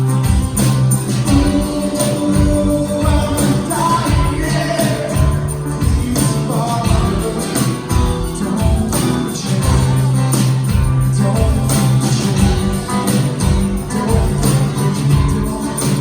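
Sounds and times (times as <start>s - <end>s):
live band playing instrumental: 0.0s - 16.0s.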